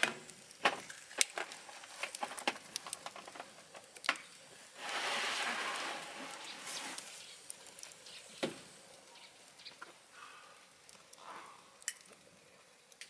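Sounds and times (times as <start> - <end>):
wood fire crackling and popping: 0.0 - 13.0
hiss: 4.4 - 11.8.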